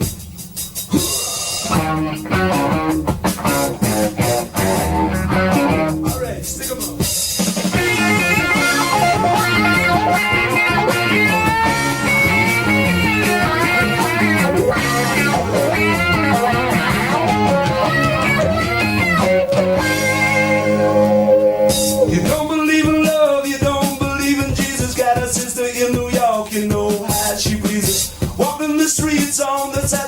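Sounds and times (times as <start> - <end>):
bass guitar: 0.0 - 28.4
drum kit: 0.0 - 30.0
electric lead guitar bending melody: 1.6 - 6.1, 7.7 - 22.4.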